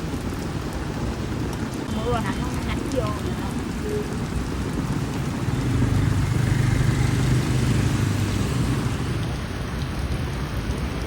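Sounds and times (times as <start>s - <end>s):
heavy rain hissing: 0.0s - 11.0s
vehicle engine running: 5.3s - 9.1s.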